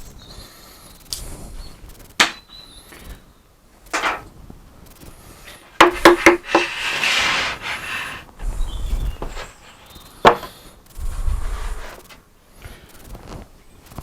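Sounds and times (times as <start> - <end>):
wood rubbing against wood: 5.7 - 12.2
sharp wooden knocks: 5.8 - 6.9, 10.2 - 10.6.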